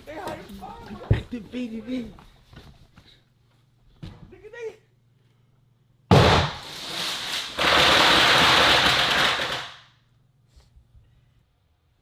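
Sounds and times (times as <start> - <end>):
fireworks explosion hissing blast: 6.1 - 9.7.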